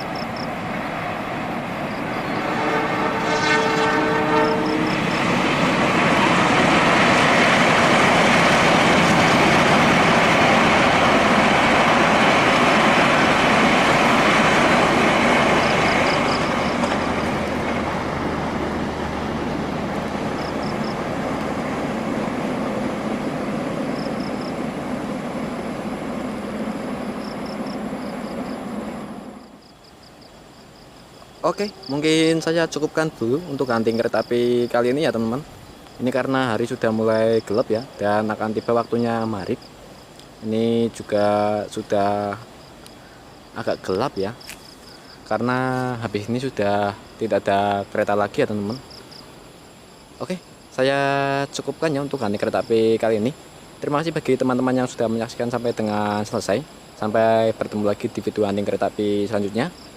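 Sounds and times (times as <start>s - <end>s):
train passing rush: 0.0s - 59.9s
train horn: 2.2s - 5.2s.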